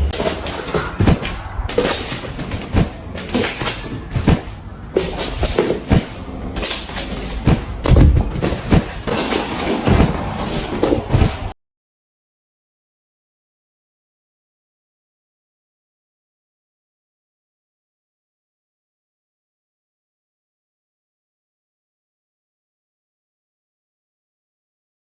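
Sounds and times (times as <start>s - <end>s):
noisy background: 0.0s - 11.6s.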